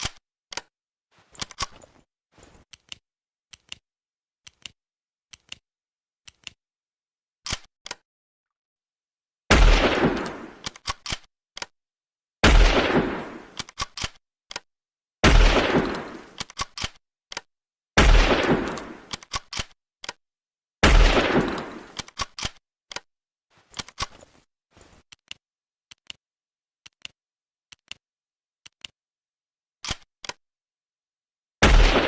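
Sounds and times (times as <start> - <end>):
rifle bolt metallic clicks: 0.0 - 0.7, 7.4 - 8.0, 10.2 - 11.7, 13.4 - 14.7, 15.8 - 17.5, 18.6 - 20.2, 21.6 - 23.1, 29.8 - 30.4
rifle shots with echo: 9.5 - 10.6, 12.4 - 13.5, 15.2 - 16.2, 18.0 - 19.0, 20.8 - 21.8, 31.6 - 32.0.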